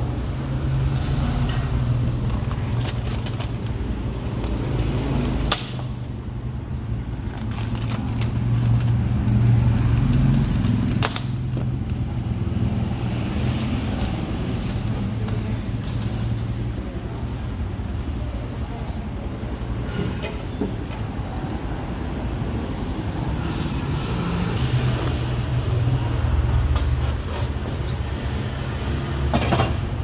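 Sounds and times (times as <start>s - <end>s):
engine and traffic rumble: 0.0s - 30.0s.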